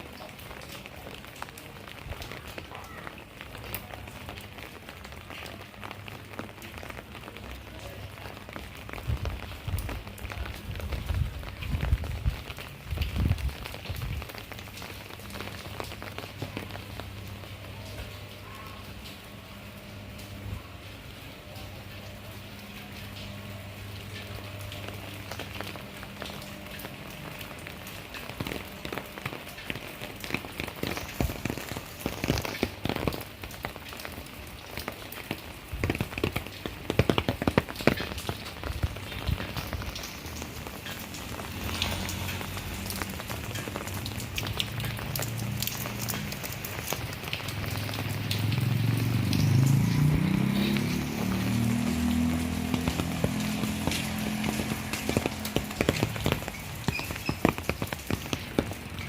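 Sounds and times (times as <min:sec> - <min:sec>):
rain falling: 0:00.0 - 0:59.0
drips tapping on surfaces: 0:33.9 - 0:59.0.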